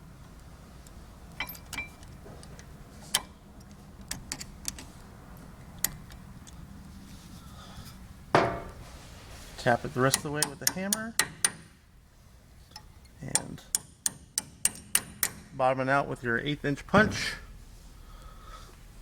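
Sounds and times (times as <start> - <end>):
small metallic clicks and taps: 0.3 - 6.6, 10.1 - 11.6, 12.7 - 15.4.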